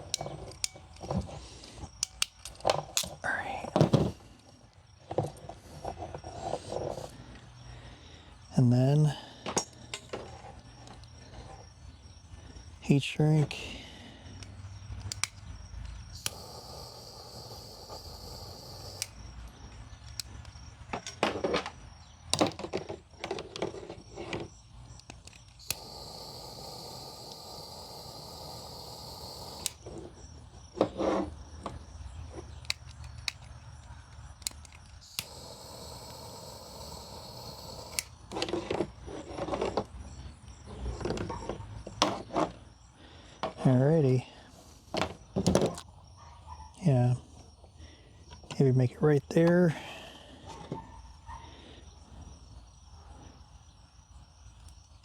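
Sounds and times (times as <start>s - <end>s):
heat gun blowing: 16.2s - 19.2s, 25.6s - 29.9s, 35.0s - 38.3s.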